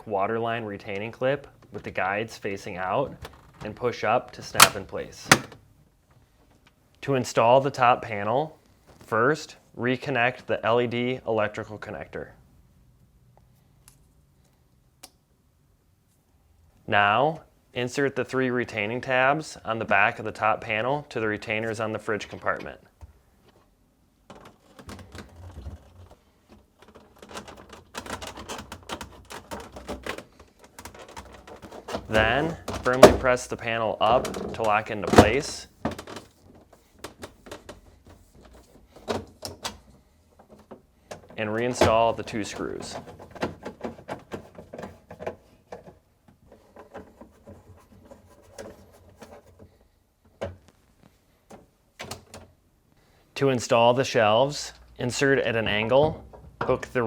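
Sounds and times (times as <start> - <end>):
plastic panel clicking and rattling: 4.6 - 5.6, 24.2 - 33.3, 38.4 - 49.7.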